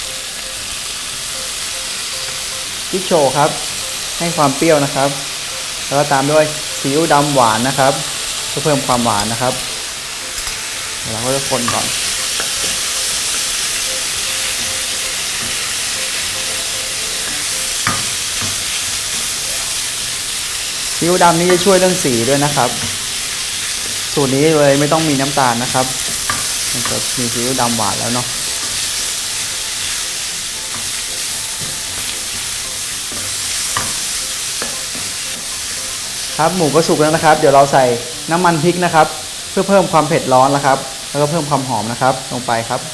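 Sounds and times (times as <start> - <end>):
meat sizzling in a pan: 0.0 - 42.9
spatula knocking on pan: 11.5 - 19.4, 30.6 - 35.8.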